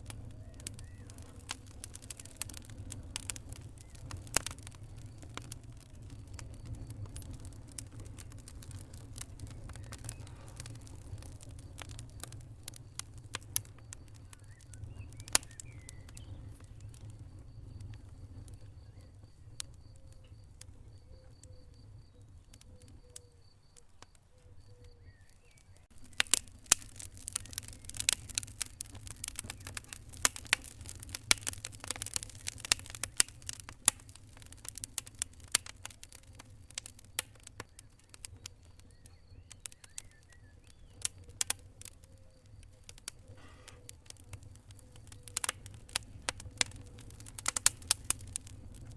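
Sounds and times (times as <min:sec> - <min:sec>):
wood fire crackling and popping: 0:00.0 - 0:48.9.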